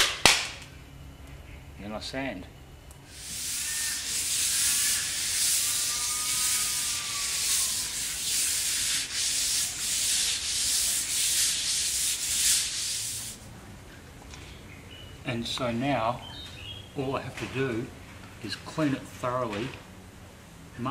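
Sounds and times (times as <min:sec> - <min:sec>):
sandpaper scratching on wood: 0:03.1 - 0:13.4.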